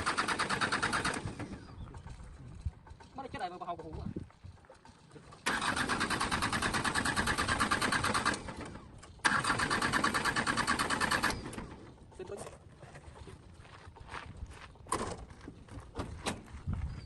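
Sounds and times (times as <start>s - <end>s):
starter motor cranking engine: 0.0s - 12.5s.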